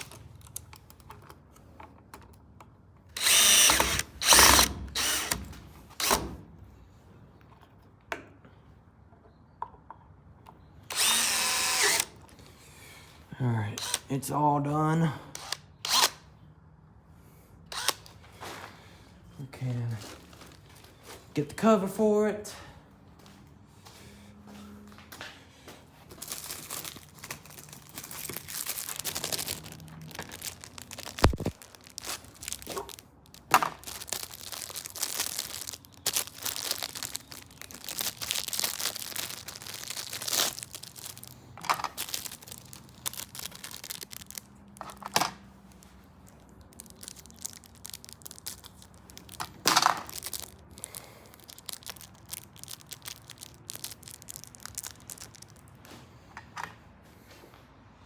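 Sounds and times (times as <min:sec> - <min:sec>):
rustling and crinkling handling: 0:18.1 - 0:22.0, 0:25.1 - 0:56.3.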